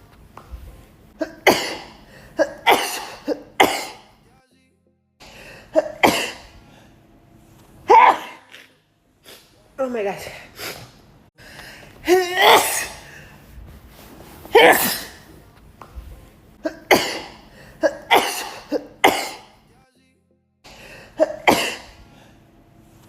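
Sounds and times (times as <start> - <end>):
woman sneezing: 1.2 - 4.0, 5.8 - 6.5, 7.9 - 9.6, 12.0 - 13.1, 14.5 - 15.3, 16.6 - 19.5, 21.2 - 22.0.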